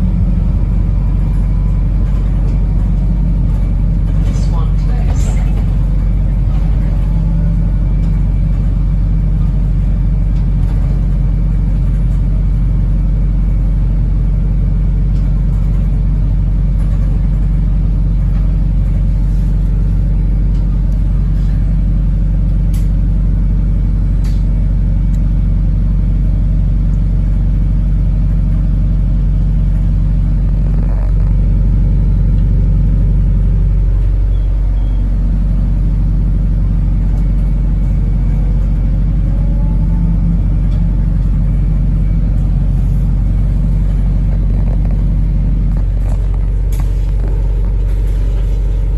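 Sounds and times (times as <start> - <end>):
bus engine drone: 0.0 - 48.9.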